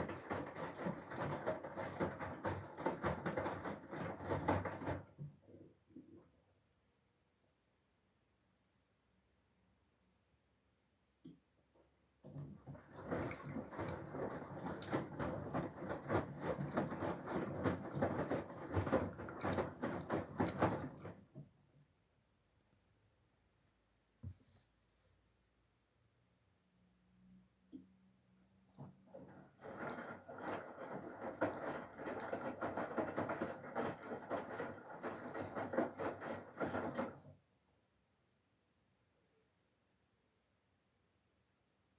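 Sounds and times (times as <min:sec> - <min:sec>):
wet laundry tumbling: 0:00.0 - 0:06.2, 0:12.2 - 0:21.7, 0:28.7 - 0:37.4
water sloshing: 0:12.2 - 0:21.4, 0:29.1 - 0:37.2.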